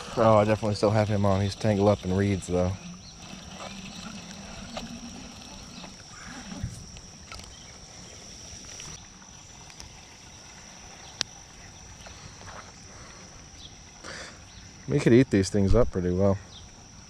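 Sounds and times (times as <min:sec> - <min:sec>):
high-pitched hum: 0:00.0 - 0:09.8
water splashing: 0:00.0 - 0:13.2.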